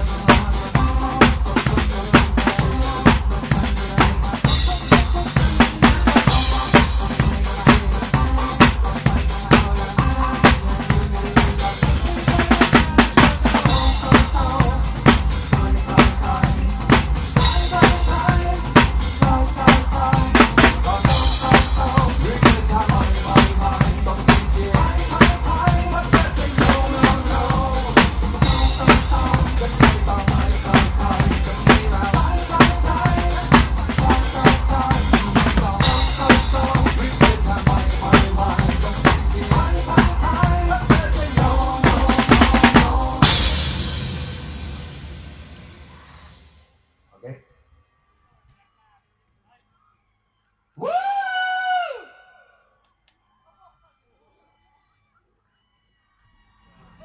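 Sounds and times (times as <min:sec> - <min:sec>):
live band music: 0:00.0 - 0:46.1
drum kit beat: 0:00.0 - 0:46.6
cymbal crash: 0:42.8 - 0:46.8.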